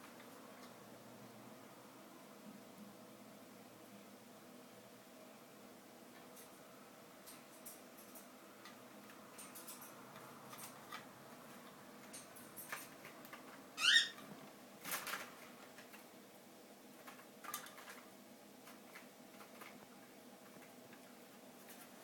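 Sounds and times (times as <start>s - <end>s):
faint clicks and scratches: 7.2s - 16.2s, 16.9s - 22.0s
pet animal squeaking: 13.8s - 14.2s.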